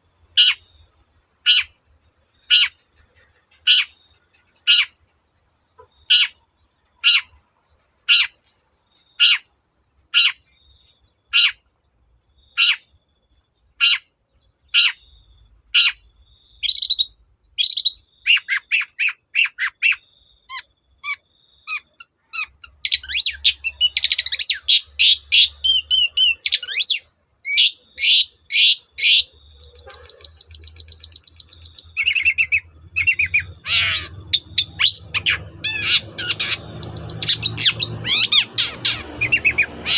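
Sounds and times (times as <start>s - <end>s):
bird singing sharp calls: 2.4s - 5.0s, 5.8s - 7.4s, 15.8s - 39.9s.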